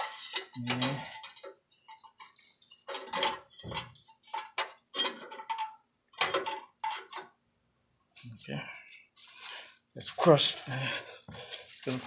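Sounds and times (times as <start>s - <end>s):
metal tools clinking and scraping: 0.0s - 7.4s.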